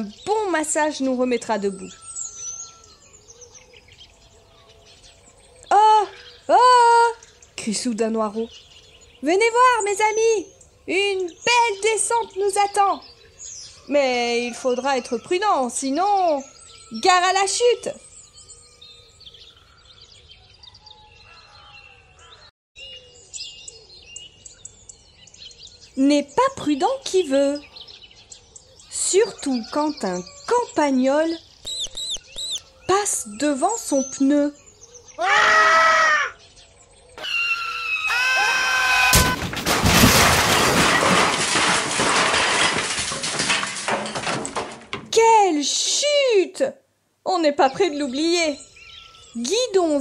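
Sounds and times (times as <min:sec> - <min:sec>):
small birds chirping: 0:00.0 - 0:38.3, 0:45.2 - 0:50.0
high screeching whistle: 0:37.2 - 0:39.4
short falling cry: 0:37.2 - 0:39.6
crash and clatter: 0:39.2 - 0:45.1.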